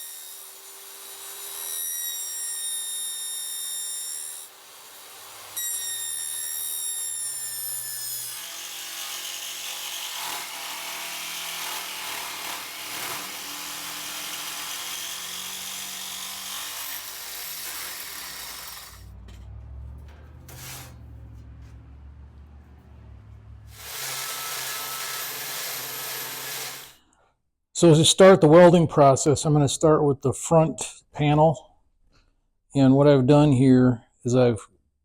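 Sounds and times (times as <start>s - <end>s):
power tool cutting sheet steel: 0.0s - 19.1s, 20.4s - 21.5s, 23.7s - 27.0s
low hum: 18.3s - 24.9s.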